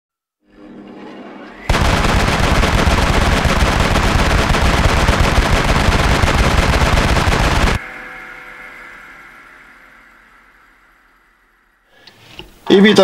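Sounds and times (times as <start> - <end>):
loud rapid-fire crackle: 1.7 - 7.8.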